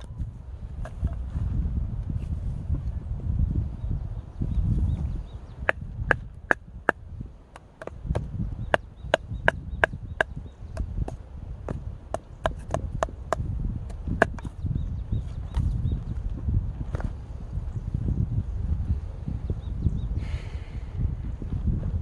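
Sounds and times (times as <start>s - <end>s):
blade chopping firewood: 5.6s - 14.5s.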